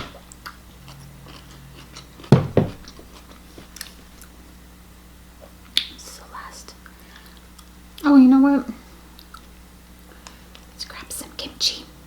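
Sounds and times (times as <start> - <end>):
person chewing noodles: 0.3 - 4.4.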